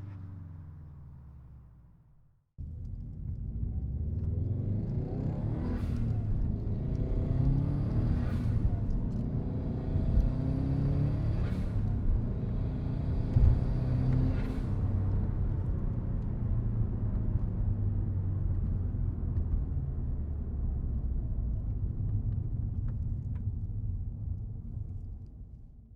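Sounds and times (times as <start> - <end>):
car engine rumbling: 0.0 - 4.8.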